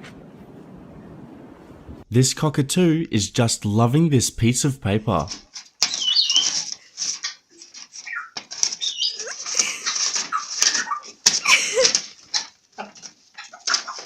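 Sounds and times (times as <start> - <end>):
paper rustling and crinkling: 5.2 - 14.0
cockatoo squeaky calls: 5.8 - 14.0.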